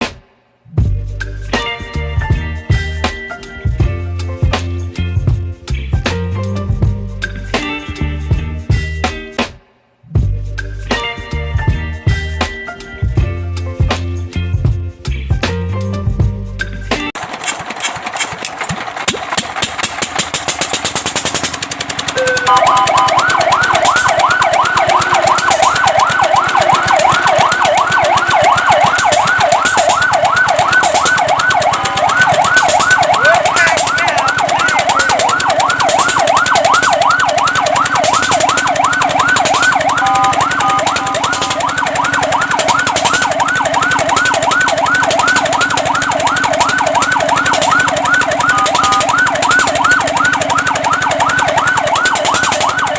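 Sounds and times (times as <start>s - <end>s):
fast rattling pulse: 17.2s - 52.9s
fire truck siren yelping: 17.4s - 52.9s.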